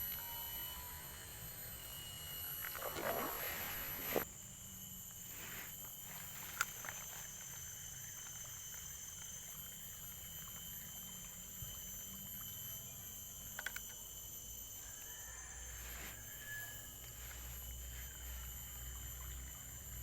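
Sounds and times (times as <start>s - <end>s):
high-pitched drone: 0.0s - 3.6s.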